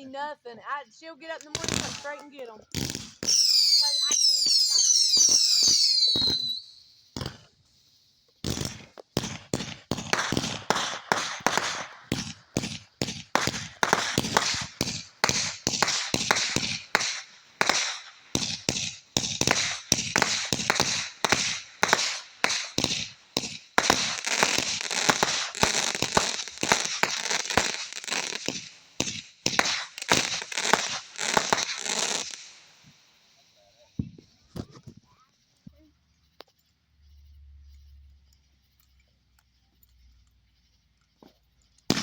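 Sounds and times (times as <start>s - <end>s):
fireworks popping and crackling: 0.9s - 36.6s, 40.0s - 42.0s.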